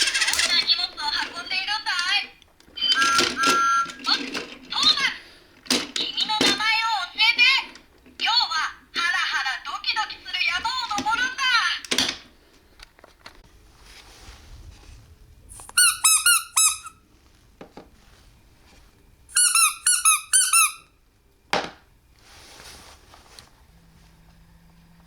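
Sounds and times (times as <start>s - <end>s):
high squeaky chirps: 15.6s - 17.0s, 19.3s - 20.9s.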